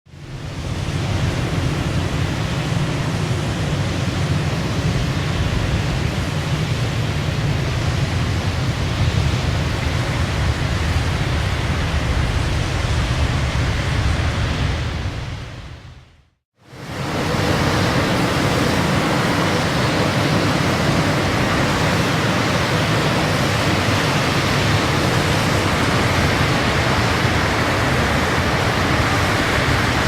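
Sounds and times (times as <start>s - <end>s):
waterfall rushing: 16.6s - 30.0s.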